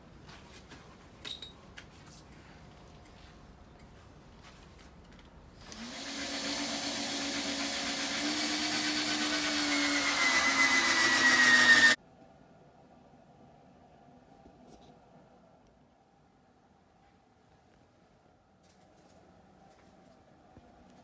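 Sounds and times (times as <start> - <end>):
electric power tool whine: 5.6 - 12.0.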